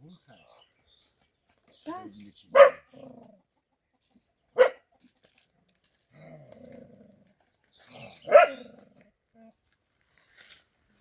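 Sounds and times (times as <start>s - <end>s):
dog barking: 2.5s - 2.9s, 4.6s - 4.8s, 8.3s - 8.7s.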